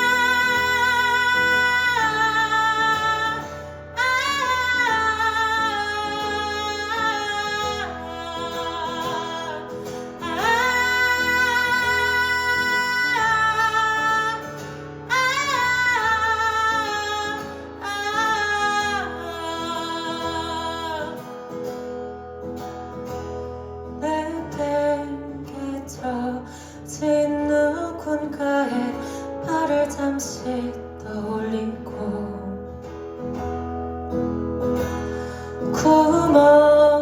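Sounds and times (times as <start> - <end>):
woman singing long notes: 0.0 - 21.2
guitar accompaniment: 0.0 - 37.0.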